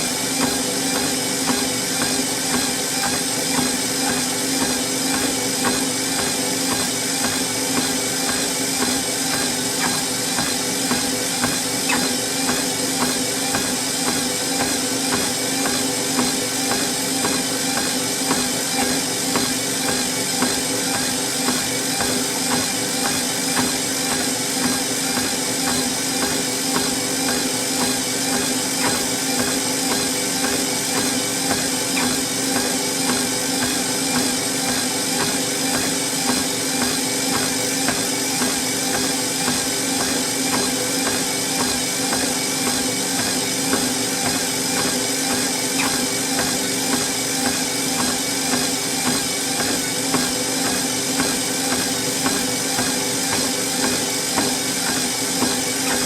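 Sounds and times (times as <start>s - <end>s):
footsteps on treadmill: 0.0s - 56.0s
treadmill motor humming: 0.0s - 56.0s.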